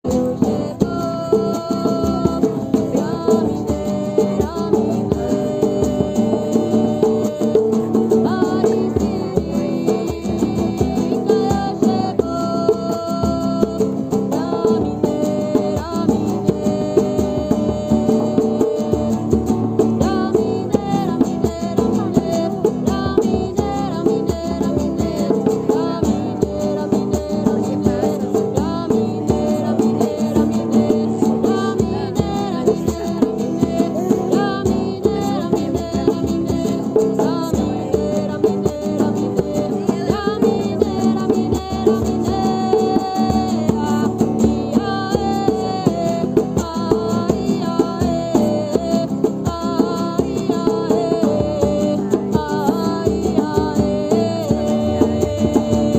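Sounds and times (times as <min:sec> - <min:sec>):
acoustic guitar strumming: 0:00.1 - 0:55.9
person singing chant: 0:20.0 - 0:55.9.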